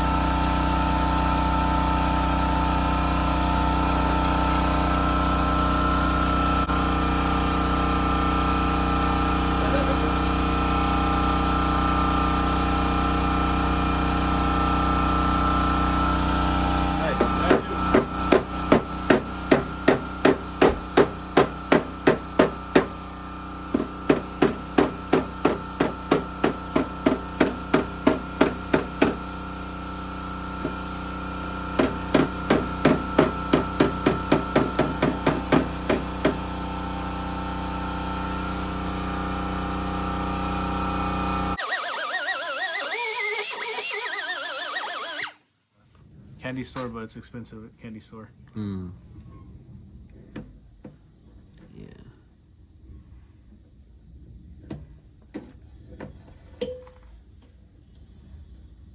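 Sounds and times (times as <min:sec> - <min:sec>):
hammer strikes: 0:17.2 - 0:22.9.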